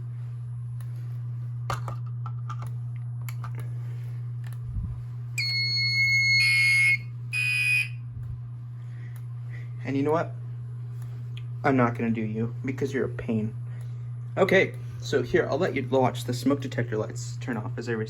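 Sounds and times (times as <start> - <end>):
fire alarm horn buzzing: 5.4 - 8.0
high electronic alarm tone: 5.4 - 8.0.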